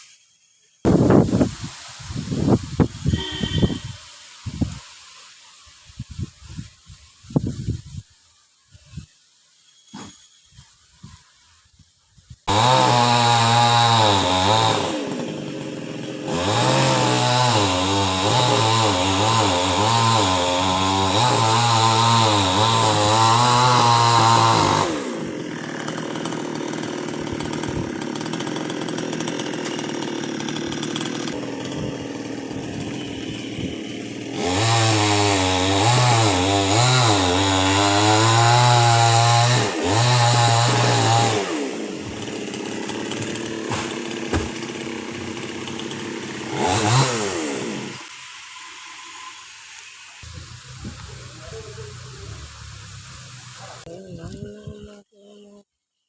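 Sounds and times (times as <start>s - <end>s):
chainsaw revving: 12.4s - 55.0s.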